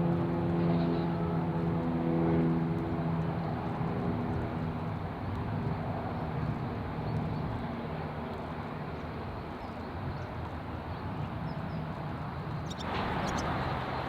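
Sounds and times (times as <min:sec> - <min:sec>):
road traffic rumble: 0:00.0 - 0:14.0
faint high bird chirps: 0:12.6 - 0:13.4
passing vehicle engine hum: 0:12.7 - 0:14.0.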